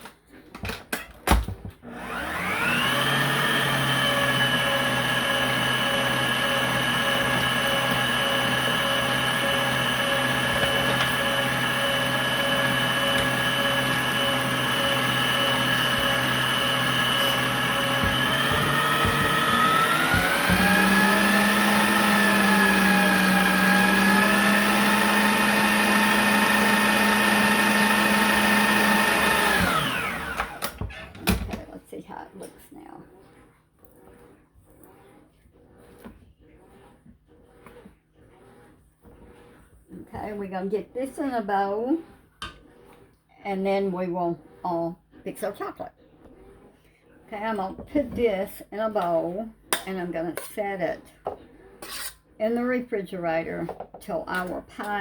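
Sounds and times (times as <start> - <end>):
electric mixer motor humming: 1.8 - 31.6.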